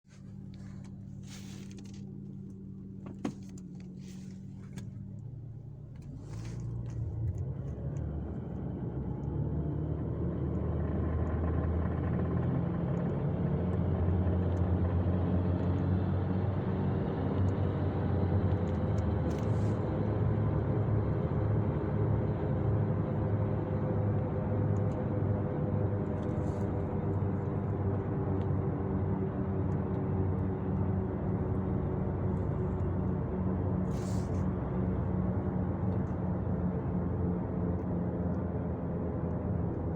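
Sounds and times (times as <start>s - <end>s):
car gearbox drone: 0.2s - 8.1s.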